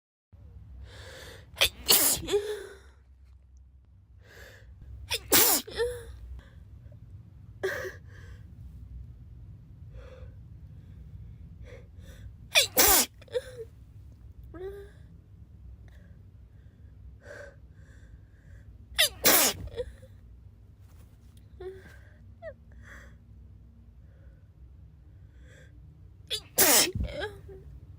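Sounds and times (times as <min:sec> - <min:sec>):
girl sneezing: 0:01.6 - 0:02.6, 0:05.1 - 0:06.0, 0:12.6 - 0:13.5, 0:19.0 - 0:19.9, 0:26.3 - 0:27.3.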